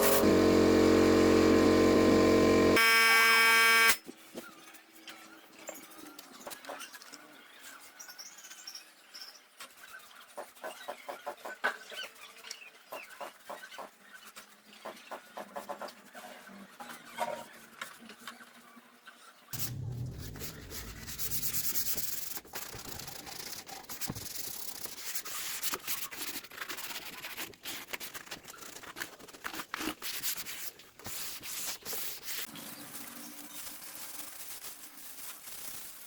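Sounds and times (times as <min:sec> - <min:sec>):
wood being sanded: 0:00.0 - 0:02.8.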